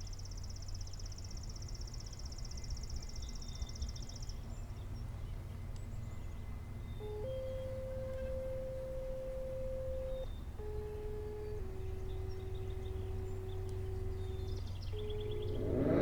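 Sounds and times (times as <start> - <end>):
steady pure tones: 7.0 - 16.0.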